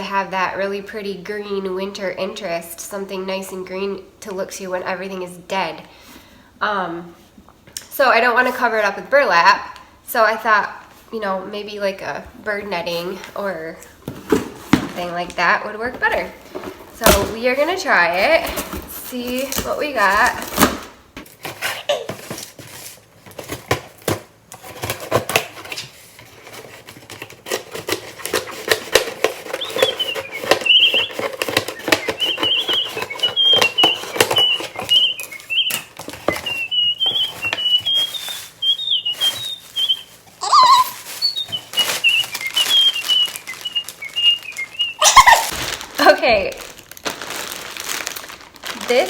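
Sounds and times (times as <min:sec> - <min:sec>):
package wrapping rustling: 0:12.8 - 0:49.0
person whistling a tune: 0:36.4 - 0:45.5.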